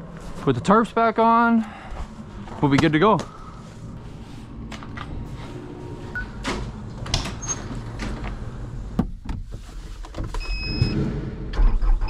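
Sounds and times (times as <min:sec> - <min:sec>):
low background hum: 0:00.0 - 0:10.0.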